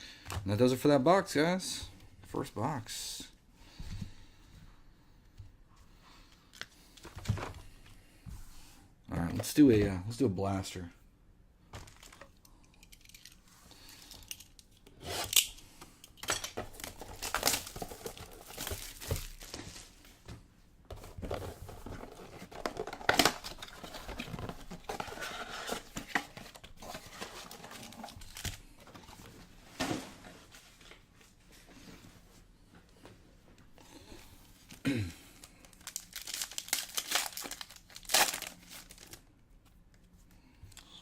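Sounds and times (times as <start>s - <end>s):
cardboard and wrappers tearing: 35.6s - 39.2s.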